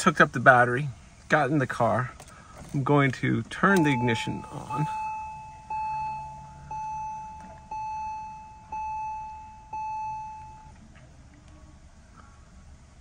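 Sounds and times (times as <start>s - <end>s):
dashboard warning chime: 3.6s - 10.7s.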